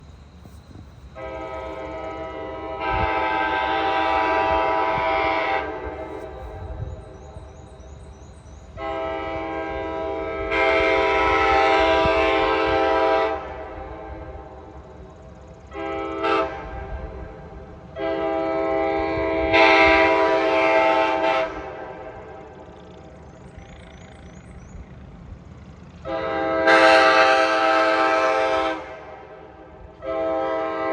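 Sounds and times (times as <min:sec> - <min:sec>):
locomotive air horn blasts: 0:01.1 - 0:06.8, 0:08.8 - 0:14.6, 0:15.7 - 0:22.6, 0:26.0 - 0:30.9.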